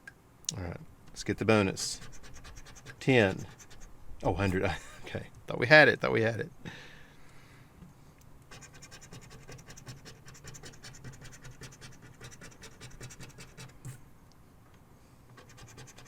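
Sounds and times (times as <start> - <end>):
scratching a scratch-off ticket: 1.8 - 4.5, 8.5 - 14.0, 15.4 - 16.0.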